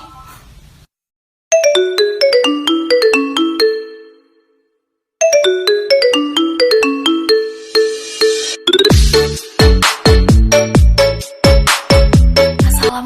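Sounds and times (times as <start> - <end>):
melodic phone ringtone: 1.5 - 12.9.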